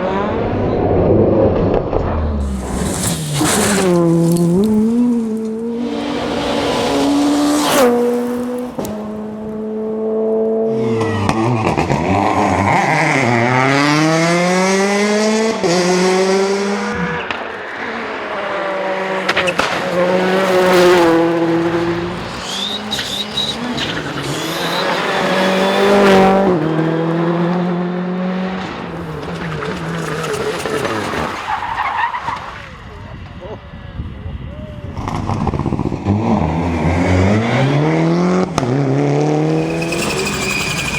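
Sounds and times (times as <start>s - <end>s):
rally car engines revving: 0.0s - 40.9s
tyre squeal: 2.4s - 8.5s, 17.0s - 26.7s, 39.5s - 40.9s.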